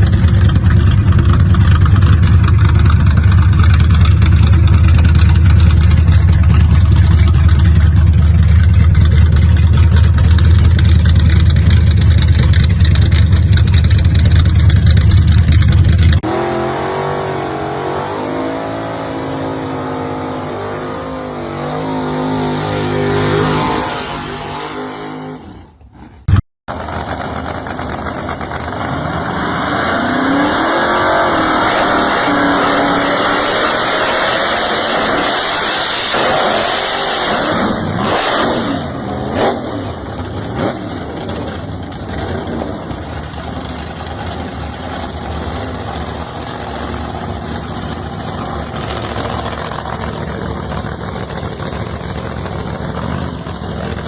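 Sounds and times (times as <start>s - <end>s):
engine idling: 0.0s - 16.3s, 26.7s - 29.7s, 38.8s - 54.0s
loud engine running: 0.0s - 25.4s, 26.7s - 54.0s
engine revving: 0.0s - 54.0s.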